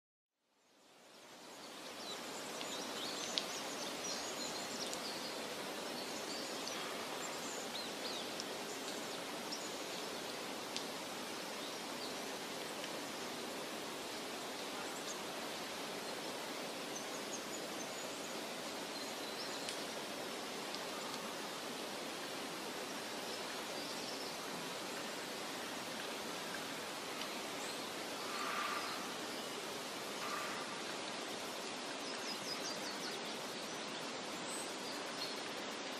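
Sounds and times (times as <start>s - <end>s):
steady forest hiss: 0.4s - 35.9s
rushing wind or water: 0.8s - 35.9s
small birds chirping: 27.2s - 35.4s
faint bird chirps: 27.6s - 29.5s.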